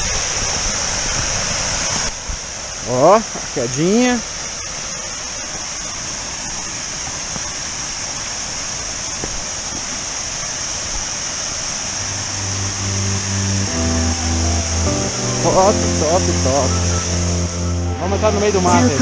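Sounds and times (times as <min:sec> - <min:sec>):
waterfall rushing: 0:00.0 - 0:19.0
music: 0:12.0 - 0:19.0.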